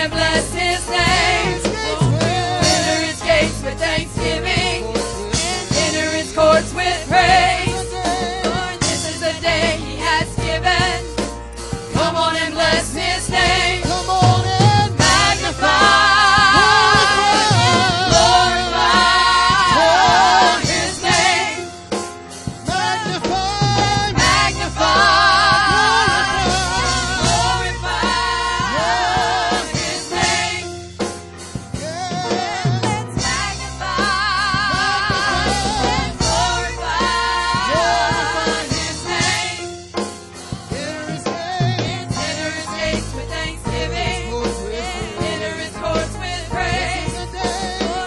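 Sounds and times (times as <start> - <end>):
gospel voices singing: 0.0 - 48.0
low bass: 23.3 - 29.4.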